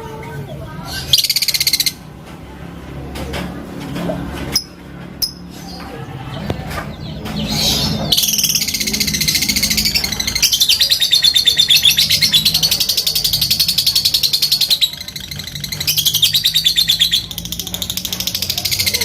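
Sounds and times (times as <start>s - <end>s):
lovebird chattering trill: 7.5s - 19.0s.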